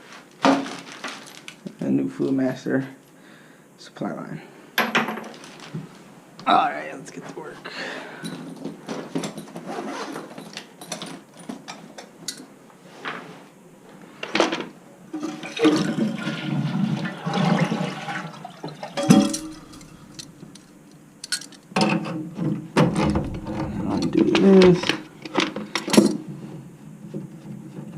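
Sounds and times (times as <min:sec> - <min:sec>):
toilet flushing: 0:15.1 - 0:20.4.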